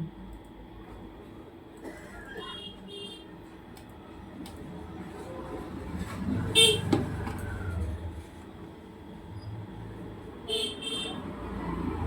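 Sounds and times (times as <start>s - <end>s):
vehicle passing with low rumble: 11.2s - 12.0s.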